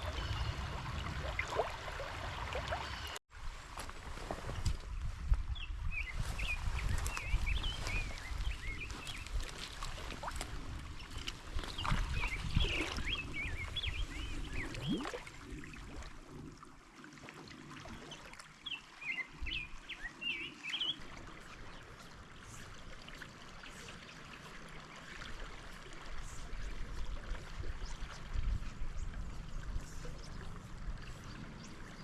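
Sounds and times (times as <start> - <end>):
river water flowing: 0.0 - 3.8, 7.8 - 32.0.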